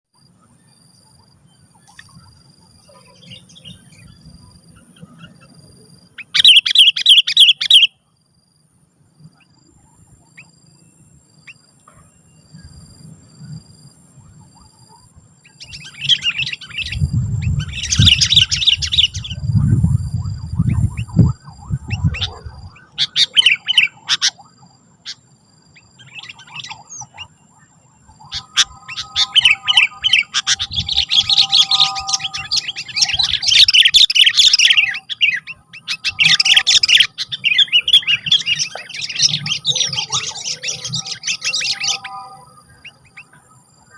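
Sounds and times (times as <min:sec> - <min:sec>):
bird singing chattering phrases: 0:04.8 - 0:07.9, 0:15.5 - 0:25.3, 0:25.9 - 0:43.4.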